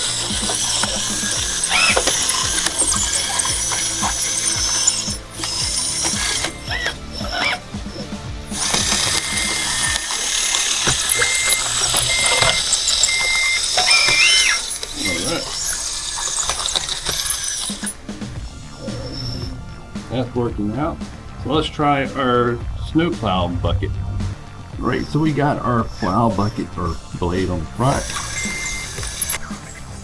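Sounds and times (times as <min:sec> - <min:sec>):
toy loader motors whining: 0:00.0 - 0:23.4, 0:24.3 - 0:30.0
short beeps: 0:10.9 - 0:16.3.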